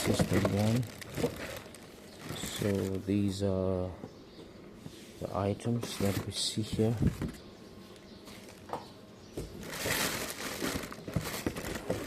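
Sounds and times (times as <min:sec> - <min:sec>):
plastic packaging crinkling: 0:00.0 - 0:03.1, 0:09.6 - 0:12.0.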